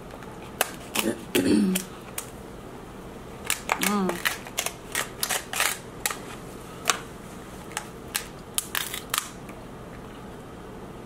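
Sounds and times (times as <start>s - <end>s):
crab shells cracking: 3.4s - 6.2s, 7.7s - 9.6s.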